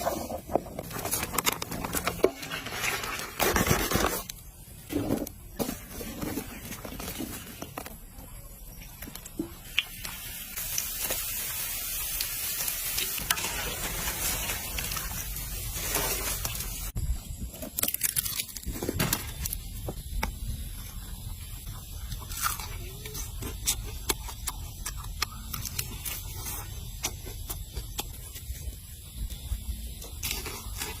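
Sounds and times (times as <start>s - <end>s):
food sizzling: 9.6s - 17.0s.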